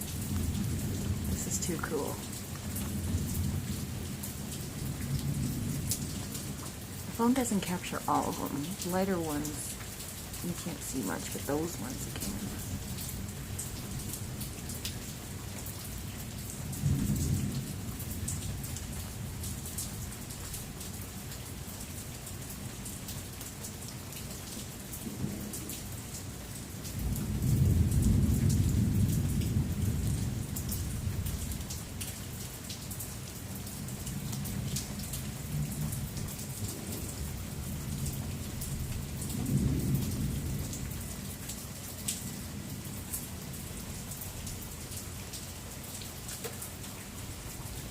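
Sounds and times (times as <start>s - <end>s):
thunder rumbling: 0.0s - 6.6s, 16.6s - 19.5s, 27.0s - 31.7s
heavy rain: 0.0s - 47.9s.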